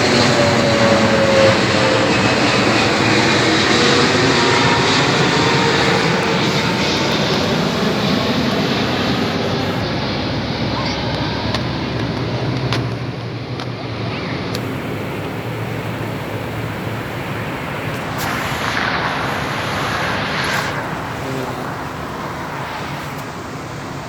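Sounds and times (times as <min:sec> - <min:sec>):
jet engines roaring: 0:00.0 - 0:24.0.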